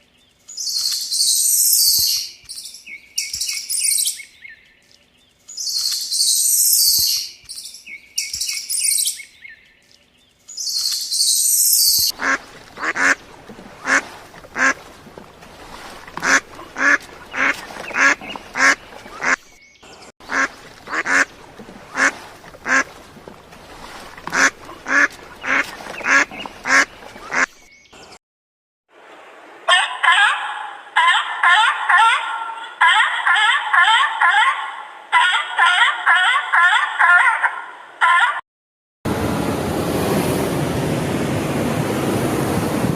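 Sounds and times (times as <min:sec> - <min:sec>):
high-pitched bird chirping: 0:00.6 - 0:04.5, 0:05.6 - 0:09.6, 0:10.6 - 0:12.1
duck quacking: 0:12.1 - 0:13.2, 0:13.8 - 0:14.9, 0:16.1 - 0:19.4, 0:20.2 - 0:21.3, 0:21.9 - 0:23.0, 0:24.2 - 0:27.6, 0:29.7 - 0:38.4.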